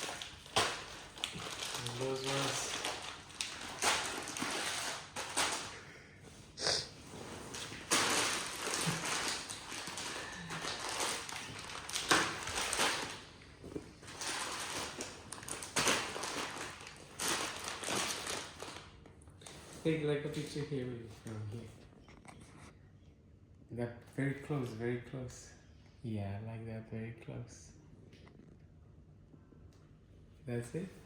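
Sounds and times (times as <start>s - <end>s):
plastic bags rustling: 0.0s - 5.9s, 6.9s - 20.6s.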